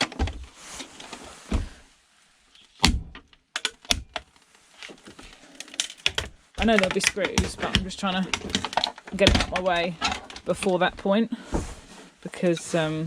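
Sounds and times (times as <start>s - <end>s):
plastic and metal clicks and knocks: 2.6s - 4.3s, 4.9s - 11.0s.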